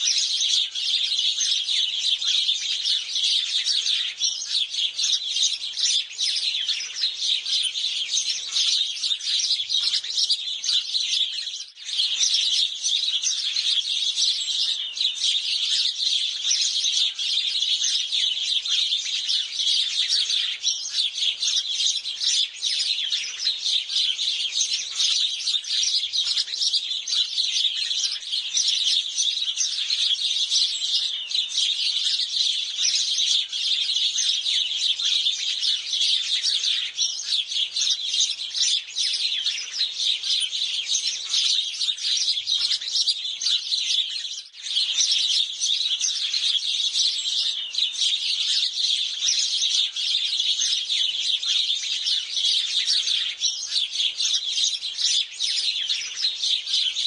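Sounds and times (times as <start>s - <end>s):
sparrows chirping: 0.0s - 57.0s.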